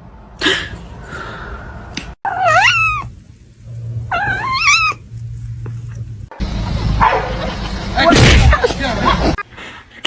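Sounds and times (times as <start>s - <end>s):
cat meowing: 2.3s - 3.1s, 4.1s - 5.0s.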